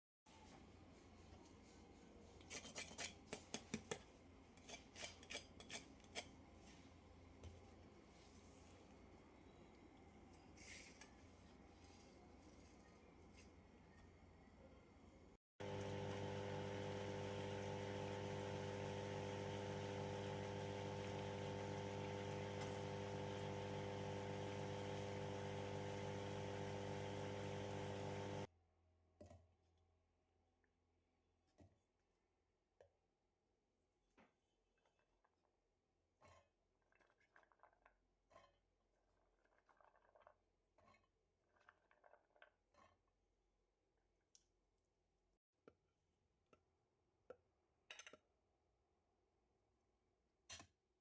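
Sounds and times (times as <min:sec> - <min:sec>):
small electric motor humming: 0:15.6 - 0:28.5.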